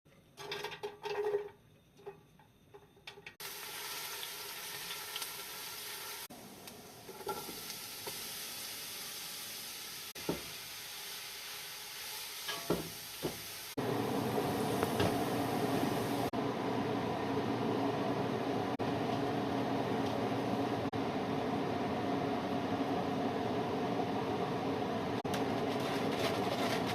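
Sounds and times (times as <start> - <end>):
food sizzling in a pan: 3.4 - 16.3
utensil stirring and knocking pan: 12.5 - 13.5, 25.2 - 26.9.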